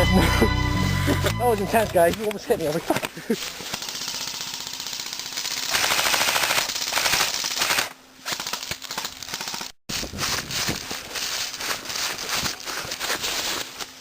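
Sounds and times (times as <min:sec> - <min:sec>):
airsoft guns firing full-auto: 0:03.0 - 0:13.7.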